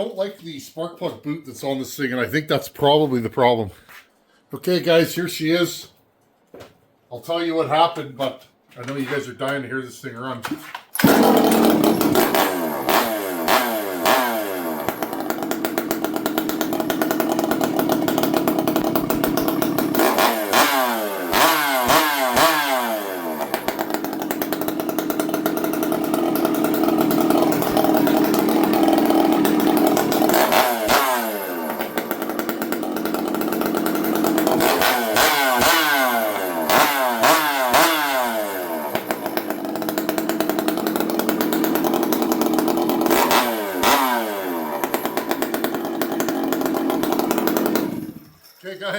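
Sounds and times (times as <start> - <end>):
chainsaw idling and revving: 11.0 - 48.3.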